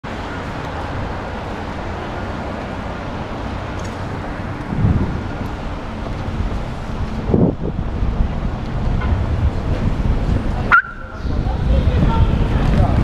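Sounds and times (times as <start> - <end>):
bicycle road noise: 0.0 - 13.0
low rumble: 4.0 - 13.0
wind on microphone: 4.1 - 13.0.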